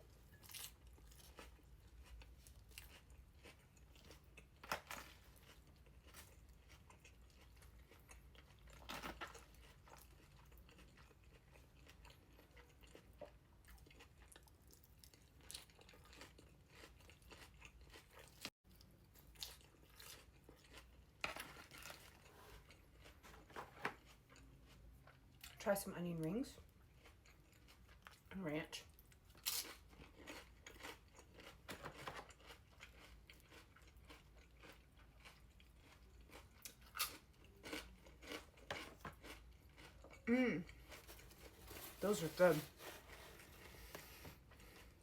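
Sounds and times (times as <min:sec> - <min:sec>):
person chewing and crunching food: 0:00.0 - 0:25.6, 0:26.5 - 0:45.0.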